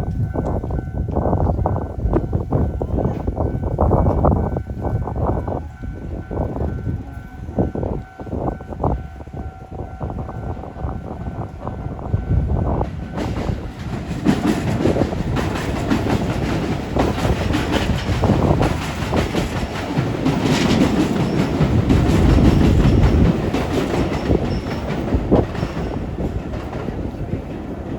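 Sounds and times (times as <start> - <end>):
train wheels clattering over rail joints: 12.5 - 27.9.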